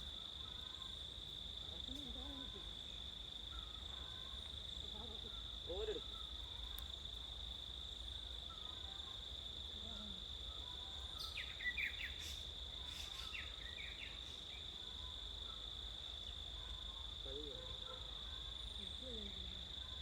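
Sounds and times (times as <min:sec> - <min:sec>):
insect trilling: 0:00.0 - 0:20.0
bird chirps: 0:11.1 - 0:14.7.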